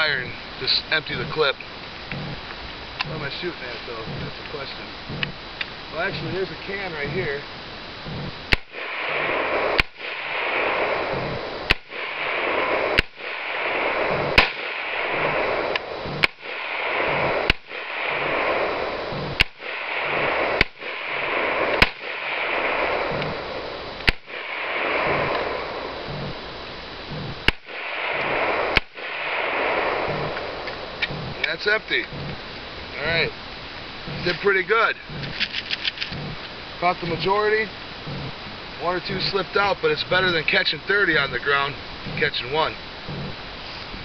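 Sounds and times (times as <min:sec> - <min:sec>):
hiss: 0:00.0 - 0:33.4
rifle gunshots: 0:08.5 - 0:26.6, 0:27.4 - 0:31.6.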